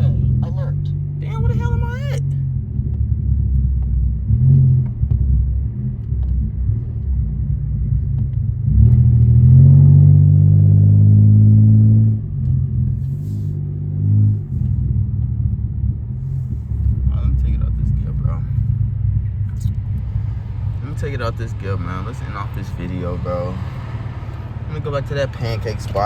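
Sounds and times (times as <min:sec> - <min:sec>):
car exhaust droning: 0:00.0 - 0:26.0.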